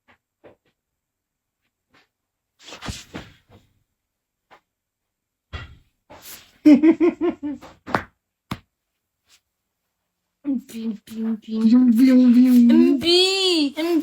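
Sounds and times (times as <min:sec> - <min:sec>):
high-pitched voice: 0:10.5 - 0:14.0.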